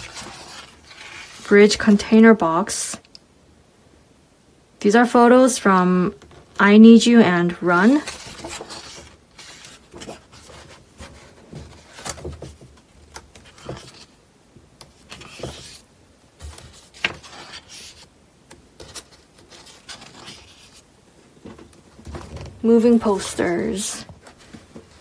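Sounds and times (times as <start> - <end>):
book pages turning: 0.0 - 2.0, 7.5 - 14.2, 14.8 - 25.0
paper rustling: 0.0 - 2.0, 7.6 - 14.2, 14.8 - 25.0.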